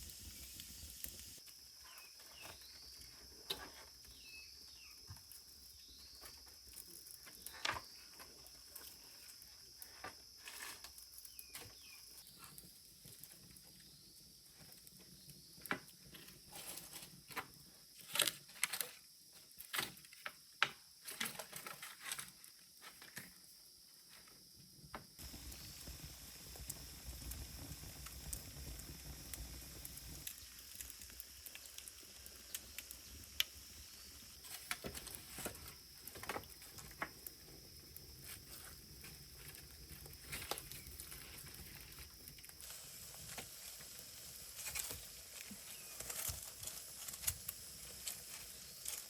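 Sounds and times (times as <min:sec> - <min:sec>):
faint chirps: 0:00.0 - 0:10.1, 0:11.1 - 0:15.7, 0:25.2 - 0:34.7.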